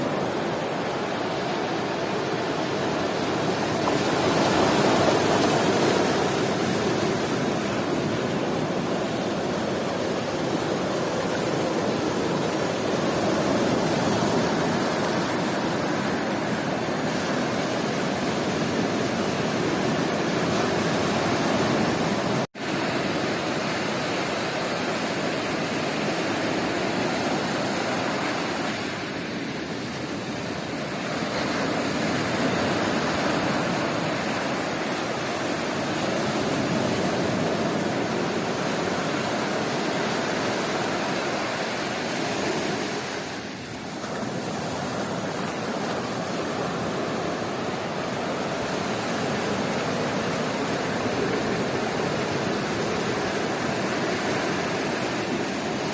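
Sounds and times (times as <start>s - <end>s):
surf breaking on beach: 0.0s - 55.9s.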